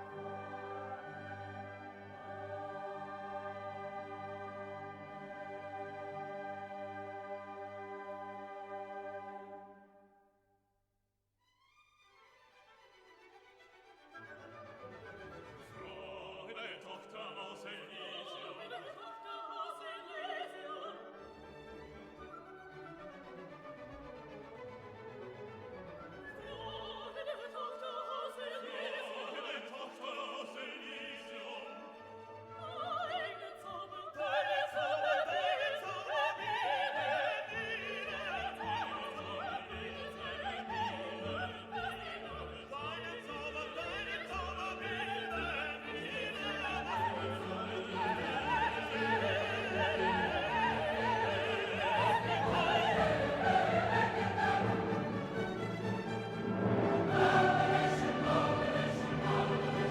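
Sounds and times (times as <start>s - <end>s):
operatic singing: 0.0s - 9.7s, 15.1s - 21.7s, 26.1s - 59.9s
orchestra playing: 21.0s - 26.6s, 38.0s - 59.9s.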